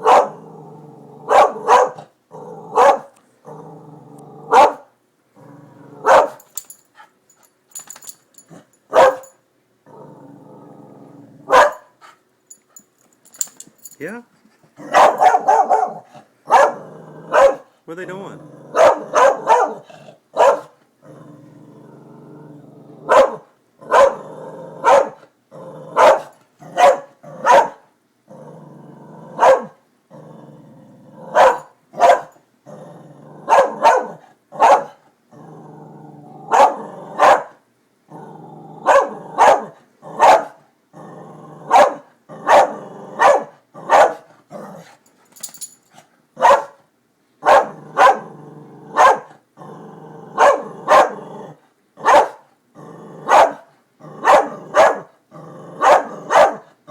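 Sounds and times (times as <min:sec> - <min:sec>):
dog barking: 0:00.0 - 0:00.4, 0:01.3 - 0:02.1, 0:02.7 - 0:03.2, 0:04.5 - 0:04.9, 0:06.0 - 0:06.5, 0:08.9 - 0:09.3, 0:11.5 - 0:12.0, 0:14.8 - 0:17.7, 0:18.7 - 0:20.8, 0:23.1 - 0:24.2, 0:24.8 - 0:25.2, 0:26.0 - 0:27.8, 0:29.4 - 0:29.8, 0:31.4 - 0:32.4, 0:33.5 - 0:35.0, 0:36.5 - 0:37.6, 0:38.9 - 0:40.6, 0:41.7 - 0:44.3, 0:46.4 - 0:46.8, 0:47.4 - 0:48.2, 0:49.0 - 0:49.4, 0:50.4 - 0:51.2, 0:52.0 - 0:52.4, 0:53.3 - 0:55.1, 0:55.8 - 0:56.7
dog growling: 0:00.0 - 0:01.7, 0:02.3 - 0:06.3, 0:09.8 - 0:11.6, 0:14.6 - 0:20.3, 0:21.0 - 0:27.6, 0:28.3 - 0:31.6, 0:32.6 - 0:37.3, 0:38.1 - 0:45.0, 0:47.5 - 0:56.9.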